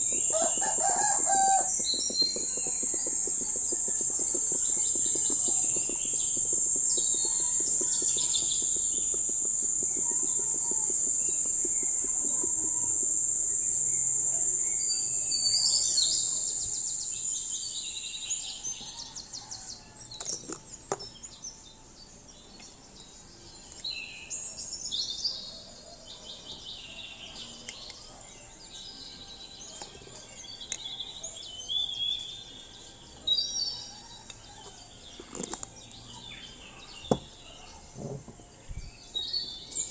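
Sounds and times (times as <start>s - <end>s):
steady high-pitched buzz: 0.0s - 17.6s
birds chirping: 0.0s - 39.9s.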